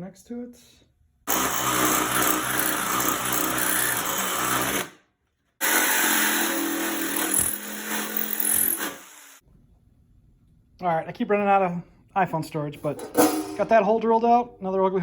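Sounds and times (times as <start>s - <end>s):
power drill boring through metal: 1.3s - 5.0s, 5.6s - 9.4s.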